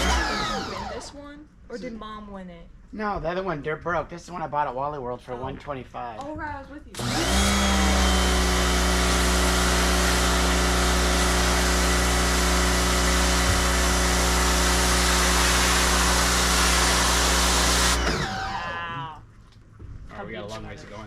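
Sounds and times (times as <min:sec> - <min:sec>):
pressure washer motor humming: 0:00.0 - 0:01.1, 0:07.0 - 0:18.8.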